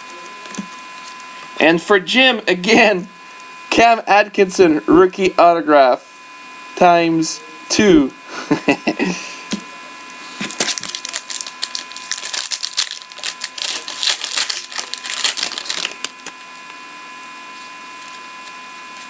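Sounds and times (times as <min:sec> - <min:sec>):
steady electrical hum: 0:00.0 - 0:19.0
packaging crinkling and tearing: 0:10.4 - 0:16.4.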